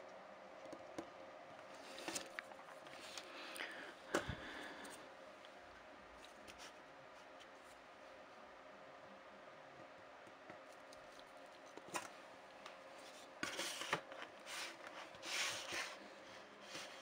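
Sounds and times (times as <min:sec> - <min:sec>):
faint steady hum: 0:00.0 - 0:17.0.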